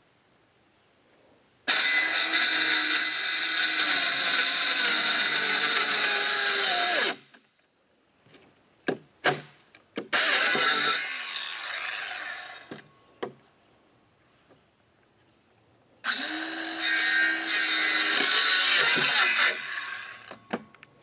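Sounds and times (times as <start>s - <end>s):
power saw cutting wood: 1.7s - 7.2s, 10.1s - 12.8s, 16.1s - 20.5s.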